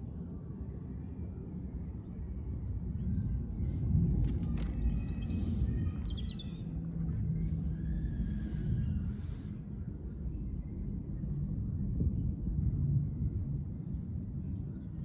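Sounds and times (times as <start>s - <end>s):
steady low rumble: 2.5s - 14.9s
birds chirping: 3.4s - 10.0s.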